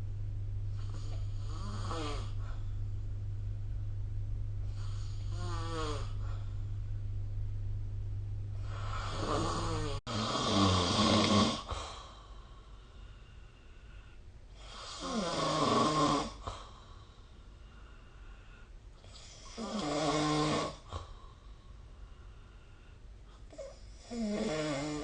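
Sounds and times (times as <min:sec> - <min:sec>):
steady low hum: 0:00.0 - 0:25.0
person snoring: 0:00.7 - 0:02.6, 0:04.7 - 0:06.6, 0:08.6 - 0:12.0, 0:14.6 - 0:16.7, 0:19.2 - 0:21.1, 0:23.5 - 0:25.0.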